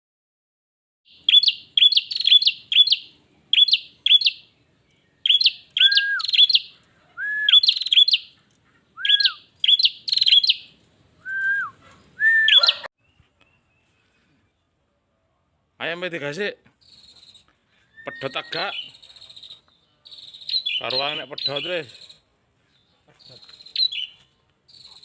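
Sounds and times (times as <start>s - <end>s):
bird calling lower falling notes: 1.1s - 8.4s, 9.0s - 13.9s, 17.9s - 19.0s
bird chirping: 1.1s - 14.8s, 16.7s - 25.0s.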